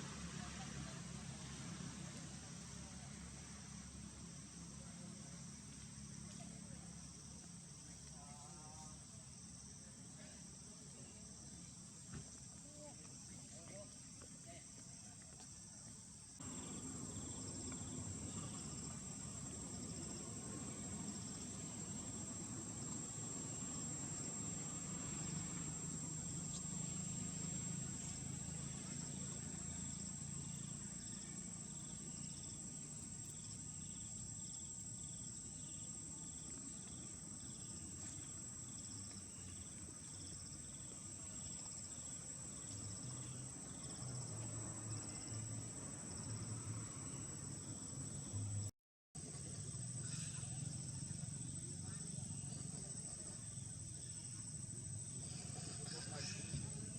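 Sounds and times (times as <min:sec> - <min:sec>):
insect chirping in pulses: 0:16.4 - 0:48.7.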